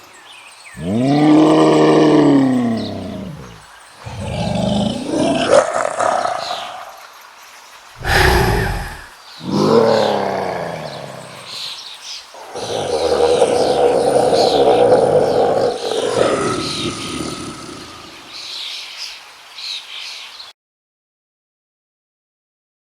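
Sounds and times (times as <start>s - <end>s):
beast roaring: 0.8s - 7.0s, 8.0s - 11.7s, 12.4s - 18.4s
quiet growls: 0.8s - 7.0s, 8.0s - 18.6s.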